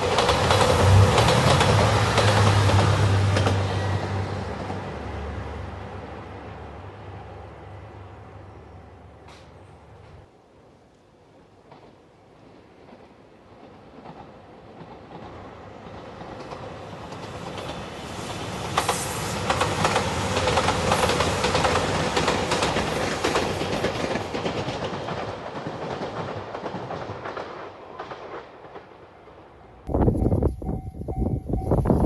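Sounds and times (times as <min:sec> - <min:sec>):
train wheels clacking over rails: 0:00.0 - 0:04.8, 0:11.7 - 0:29.2
wind noise on microphone: 0:29.9 - 0:32.0.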